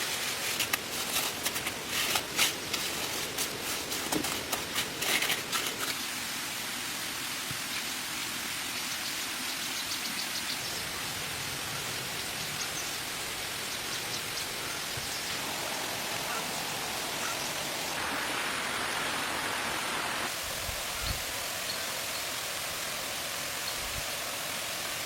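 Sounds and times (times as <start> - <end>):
falling water hissing: 0.0 - 9.6, 10.3 - 25.0.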